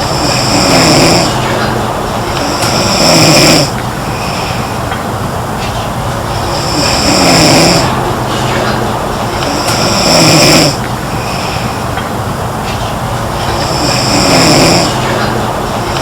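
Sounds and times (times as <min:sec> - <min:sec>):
girl snoring: 0:00.0 - 0:01.4, 0:02.4 - 0:04.4, 0:06.5 - 0:07.9, 0:08.6 - 0:10.8, 0:13.6 - 0:15.0
steady background hiss: 0:00.0 - 0:16.0.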